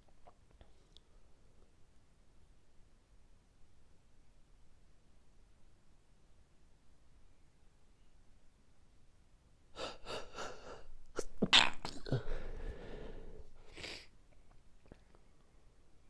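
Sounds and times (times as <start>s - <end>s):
short breaths: 9.8s - 11.0s, 12.1s - 14.1s
person sneezing: 9.8s - 14.1s.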